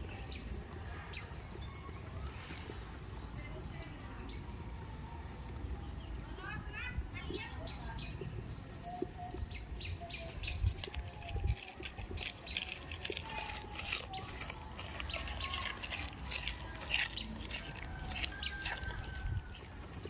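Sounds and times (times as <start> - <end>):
small clicks and rustles: 10.0 - 20.0.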